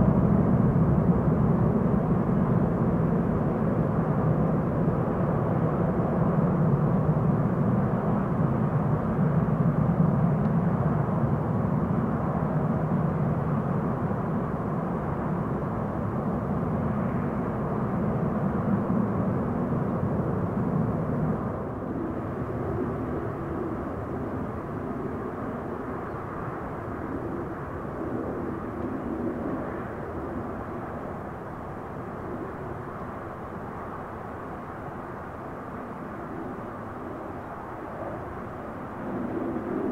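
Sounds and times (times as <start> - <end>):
jet engines rumbling: 0.0 - 39.9.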